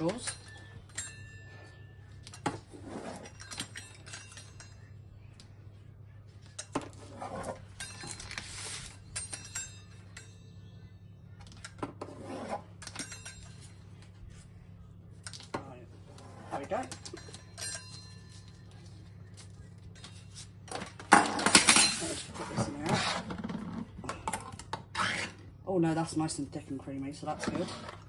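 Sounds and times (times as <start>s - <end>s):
utensils and dishes clinking: 0.0s - 4.9s, 6.4s - 10.7s, 11.4s - 14.1s, 15.2s - 24.8s
steady low hum: 0.0s - 28.0s.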